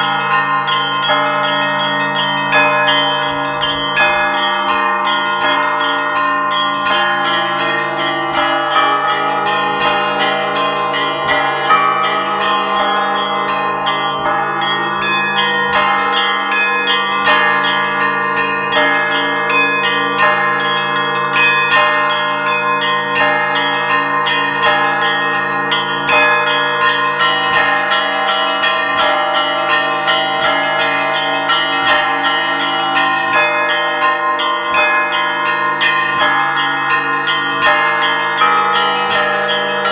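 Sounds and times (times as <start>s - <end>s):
hum of large low bells: 0.0s - 39.9s.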